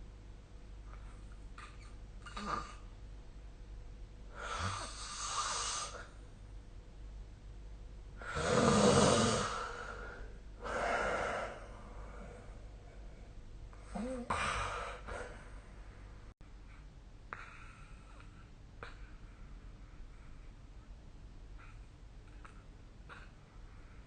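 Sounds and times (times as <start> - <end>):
person snoring: 8.2 - 12.2.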